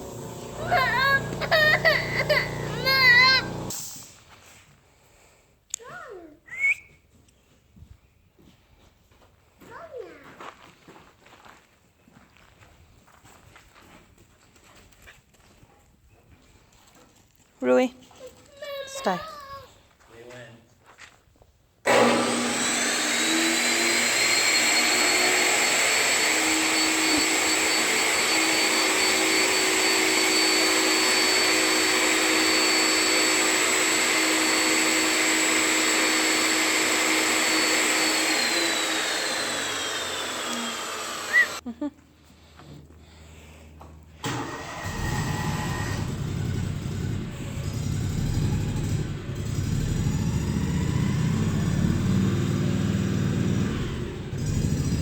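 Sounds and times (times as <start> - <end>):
electric motor whining: 0.0 - 3.7, 21.9 - 41.6, 44.2 - 55.0
hiss of air: 3.7 - 4.3.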